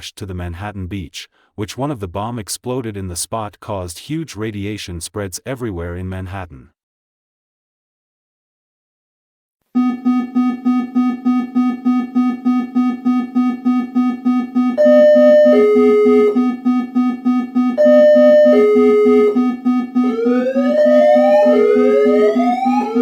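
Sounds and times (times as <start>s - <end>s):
rising siren-like sweep: 18.6s - 23.0s.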